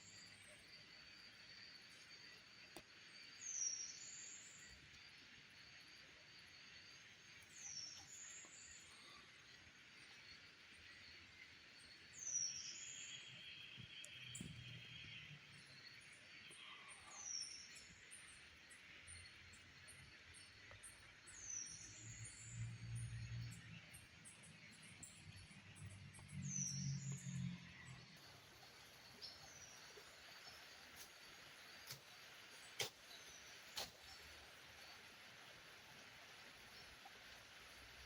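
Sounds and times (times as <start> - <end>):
insect chorus: 0.0 - 38.0.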